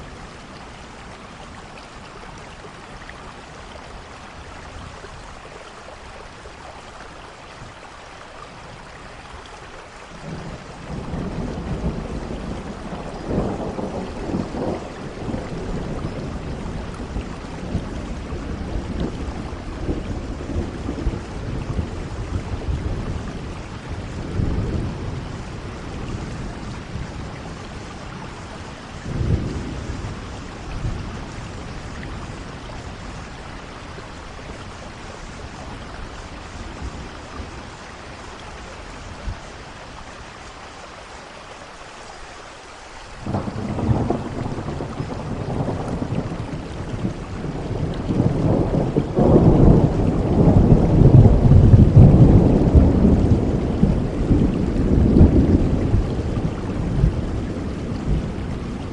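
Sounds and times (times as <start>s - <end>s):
steady rain falling: 0.0s - 58.9s
thunder rumbling: 10.2s - 40.1s, 43.2s - 58.9s.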